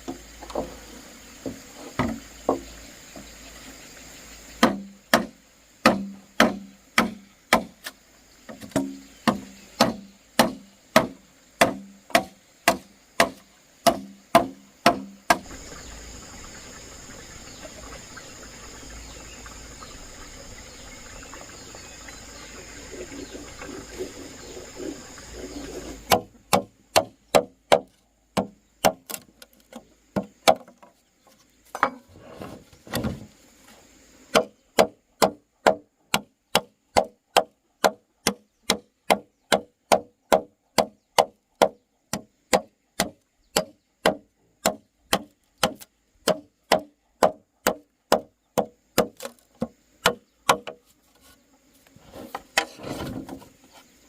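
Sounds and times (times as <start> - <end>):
wood being chopped: 4.6 - 15.5, 26.1 - 30.9, 34.3 - 50.8.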